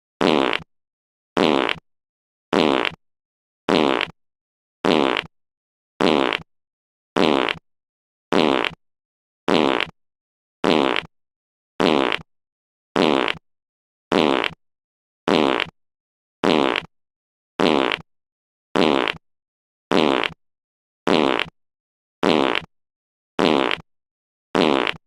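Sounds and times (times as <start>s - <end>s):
buzzy fart sound effect: 0.2s - 0.7s, 1.4s - 1.8s, 2.5s - 3.0s, 3.7s - 4.2s, 4.8s - 5.3s, 6.0s - 6.5s, 7.2s - 7.6s, 8.3s - 8.8s, 9.5s - 10.0s, 10.6s - 11.1s, 11.8s - 12.3s, 13.0s - 13.4s, 14.1s - 14.6s, 15.3s - 15.7s, 16.4s - 16.9s, 17.6s - 18.0s, 18.8s - 19.2s, 19.9s - 20.4s, 21.1s - 21.5s, 22.2s - 22.7s, 23.4s - 23.8s, 24.6s - 25.0s.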